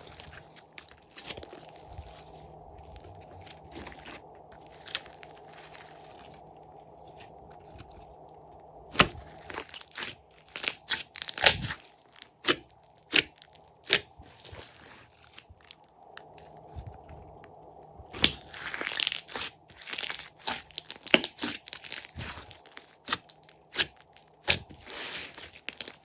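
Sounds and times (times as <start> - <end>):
slime crackling and popping: 8.9 - 14.6, 18.2 - 26.0.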